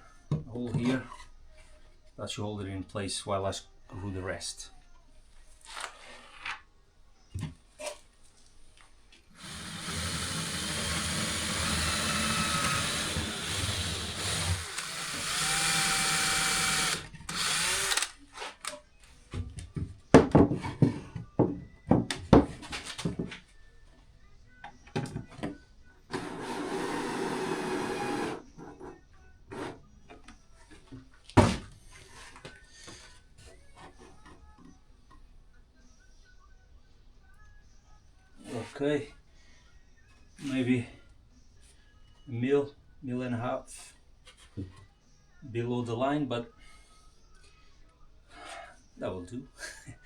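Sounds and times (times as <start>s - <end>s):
power drill driving screws: 9.4s - 18.2s, 26.4s - 28.4s.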